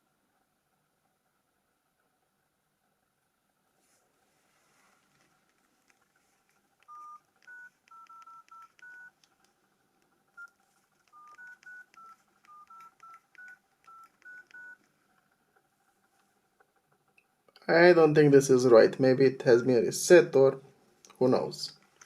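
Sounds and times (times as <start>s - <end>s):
two-tone keypad beeps: 6.9s - 9.1s, 11.1s - 14.8s.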